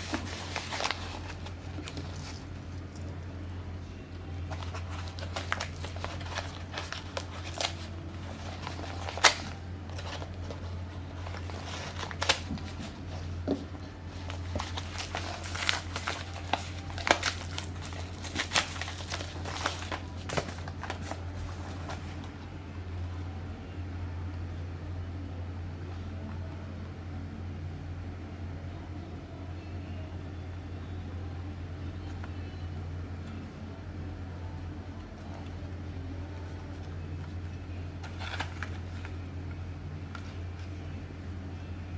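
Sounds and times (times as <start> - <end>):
packaging crinkling and rustling: 0.0 - 3.2, 4.5 - 22.4, 38.0 - 39.2
steady low hum: 0.0 - 41.9.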